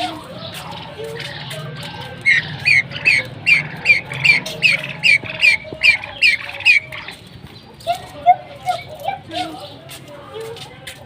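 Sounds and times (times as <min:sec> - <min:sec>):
pheasant squawking: 0:00.0 - 0:09.7.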